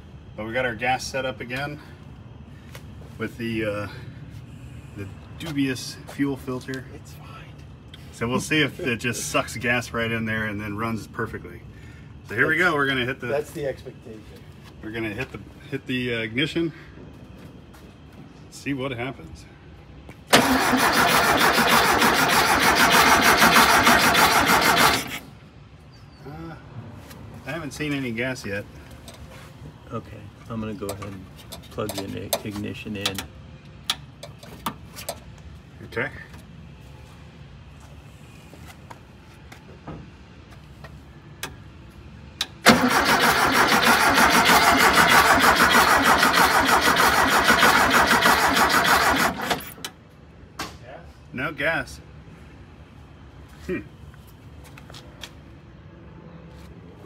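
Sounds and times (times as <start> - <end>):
starter motor cranking engine: 20.3 - 25.2, 42.6 - 49.8.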